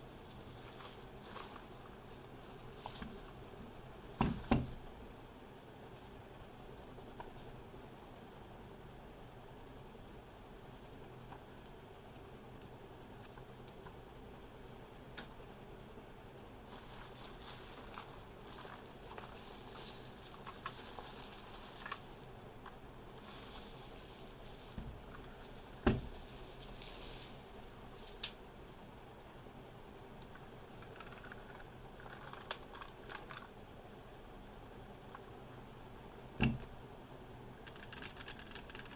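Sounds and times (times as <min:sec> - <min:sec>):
packaging rustling: 0:00.2 - 0:03.4, 0:16.7 - 0:28.4.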